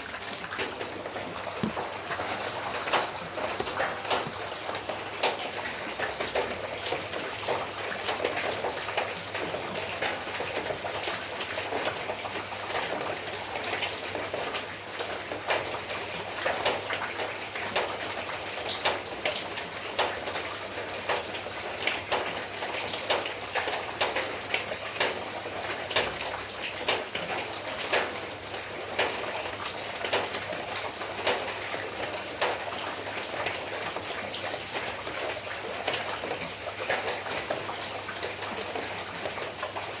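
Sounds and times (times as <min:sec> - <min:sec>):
raindrops pattering: 0:00.0 - 0:40.0.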